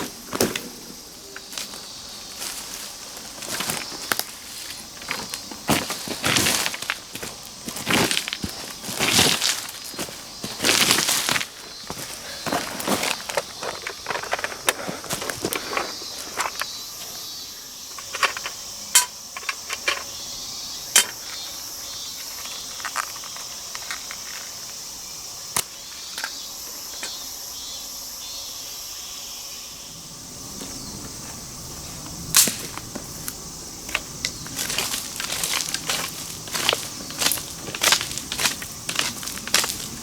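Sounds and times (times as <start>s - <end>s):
insect chirring: 0.0s - 40.0s
sharp cracks and snaps: 32.3s - 39.8s.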